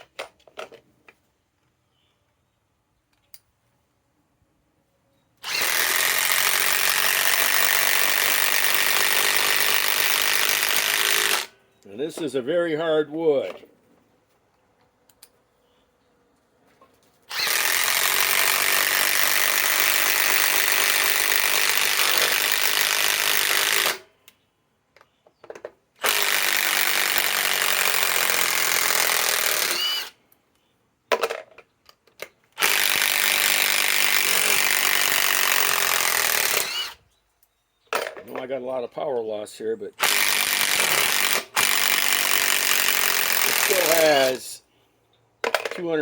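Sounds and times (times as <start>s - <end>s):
impact wrench hammering screws: 5.4s - 11.6s, 17.3s - 24.1s, 26.0s - 30.2s, 32.6s - 37.0s, 40.0s - 44.4s.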